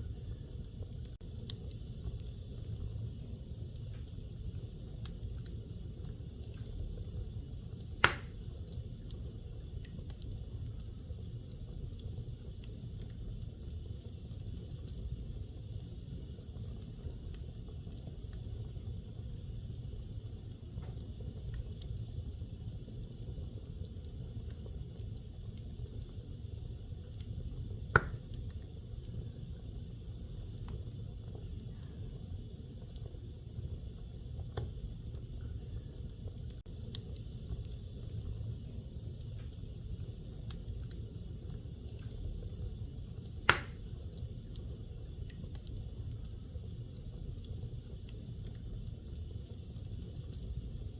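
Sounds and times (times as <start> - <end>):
wood fire crackling: 0.0 - 50.9
sharp loud fire pops: 8.0 - 8.4, 28.0 - 28.2, 43.5 - 43.8.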